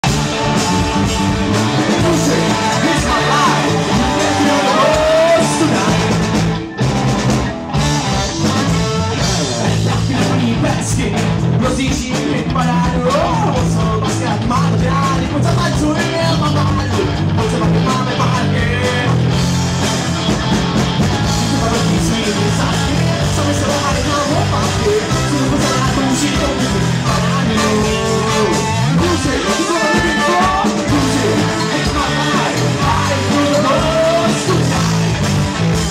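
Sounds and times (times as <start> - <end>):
rock music with drums and guitar: 0.0 - 35.9
person singing: 1.7 - 6.4, 9.3 - 19.2, 21.3 - 35.2.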